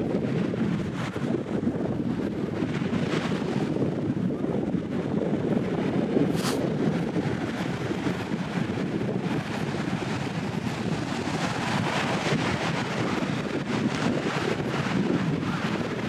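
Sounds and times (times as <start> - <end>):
surf rushing on beach: 0.0 - 16.0
wind buffeting microphone: 0.0 - 16.0
brief hiss: 6.3 - 6.6.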